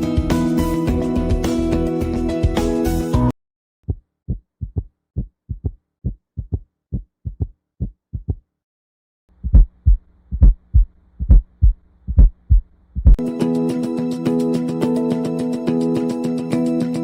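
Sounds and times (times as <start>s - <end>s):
heartbeats: 3.9s - 8.4s, 9.4s - 13.2s.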